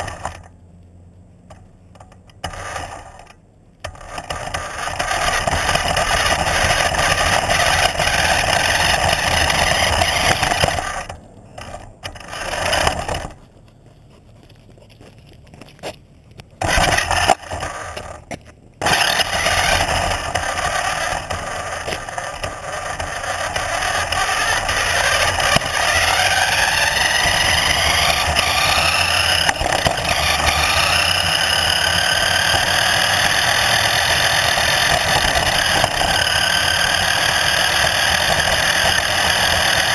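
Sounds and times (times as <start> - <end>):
motor whining: 3.9 - 13.4, 18.8 - 39.9.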